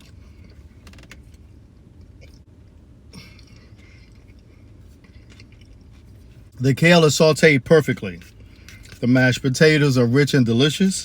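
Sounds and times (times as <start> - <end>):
person chewing food: 0.0 - 6.5
low steady hum: 0.0 - 11.0.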